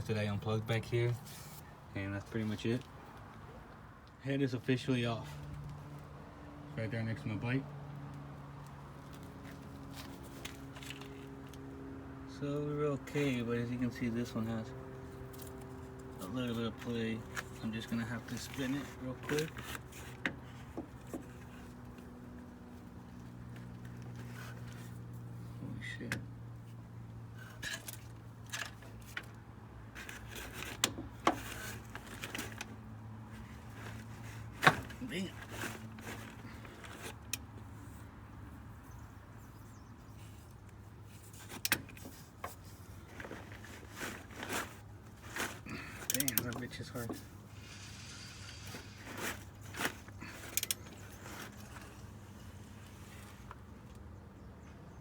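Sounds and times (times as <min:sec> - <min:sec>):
metallic clicks and scrapes: 0:27.3 - 0:38.0, 0:40.1 - 0:53.6
ratchet wrench clicks and scrapes: 0:46.0 - 0:46.8, 0:47.5 - 0:51.7.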